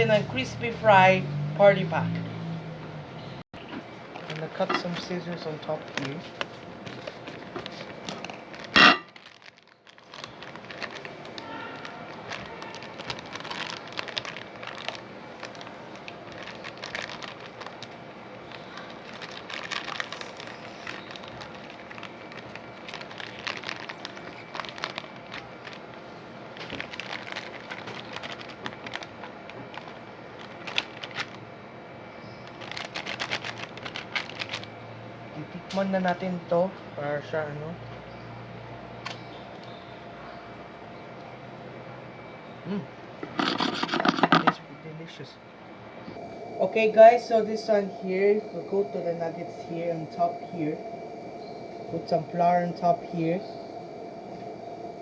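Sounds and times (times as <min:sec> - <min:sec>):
plastic packet crinkling: 0:04.1 - 0:31.4, 0:32.3 - 0:34.8, 0:43.4 - 0:44.6.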